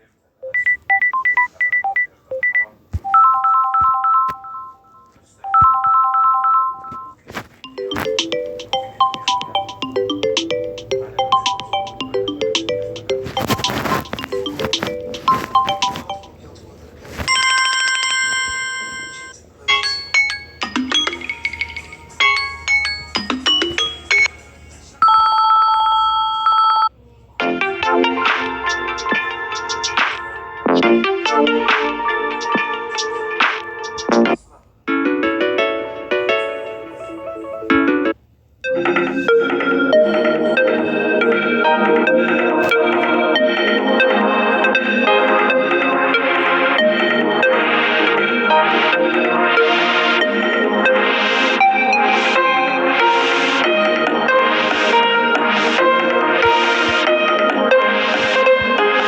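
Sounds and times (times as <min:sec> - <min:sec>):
chiming ringtone: 0:00.4 - 0:16.4, 0:17.3 - 0:26.9
electronic ringtone melody: 0:00.4 - 0:16.4, 0:17.3 - 0:26.9, 0:35.0 - 0:46.2.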